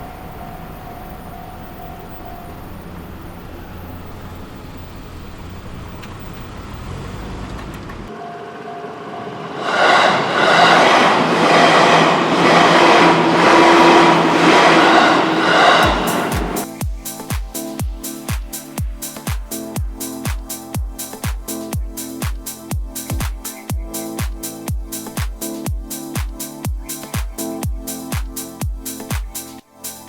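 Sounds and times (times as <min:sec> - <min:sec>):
train passing with wheel clatter: 0:00.0 - 0:17.3.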